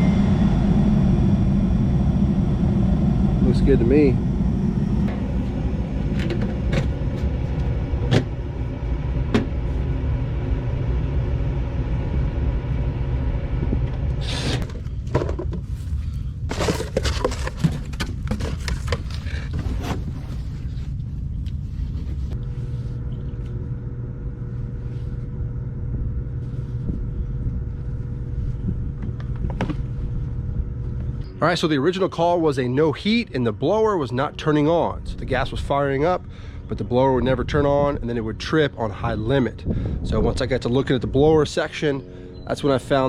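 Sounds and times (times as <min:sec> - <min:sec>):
faint steady hum: 0:00.0 - 0:43.0
furnace blower rumble: 0:00.0 - 0:43.0
clattering handling noise: 0:14.6 - 0:20.6.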